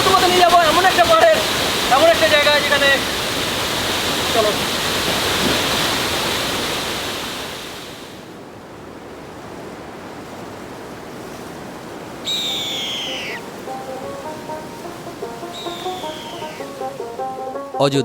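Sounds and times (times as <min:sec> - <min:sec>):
waterfall rushing: 0:00.0 - 0:08.3, 0:11.6 - 0:17.8
background music with whistle swoop: 0:12.3 - 0:14.0, 0:15.4 - 0:17.0.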